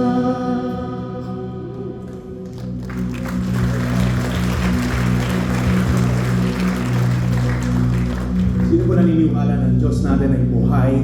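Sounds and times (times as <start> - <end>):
congregation clapping: 2.1 - 9.0
held keyboard chords: 2.7 - 9.8.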